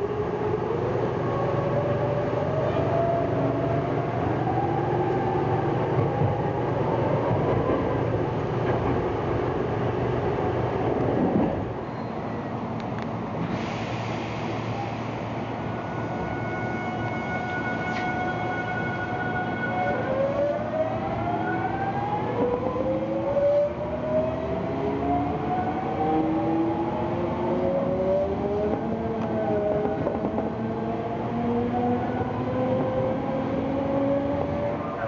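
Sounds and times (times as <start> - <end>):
train running noise: 5.1 - 20.6, 25.6 - 35.0.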